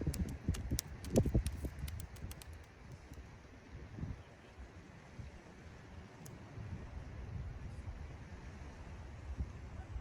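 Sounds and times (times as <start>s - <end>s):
wind buffeting microphone: 0.0s - 3.2s.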